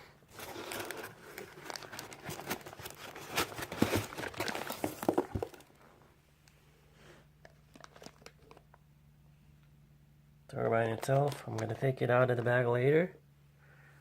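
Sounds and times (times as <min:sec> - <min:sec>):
plastic packaging crinkling: 0:00.3 - 0:05.8, 0:07.6 - 0:08.8, 0:10.9 - 0:11.9.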